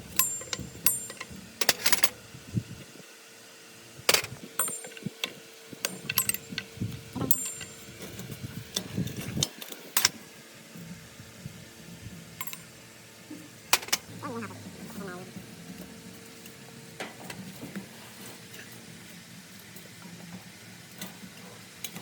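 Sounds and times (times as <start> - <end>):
faint steady hum: 0.0 - 22.0
metal parts and tools clinking: 0.1 - 2.1, 4.1 - 6.6, 7.2 - 10.2, 12.4 - 12.7.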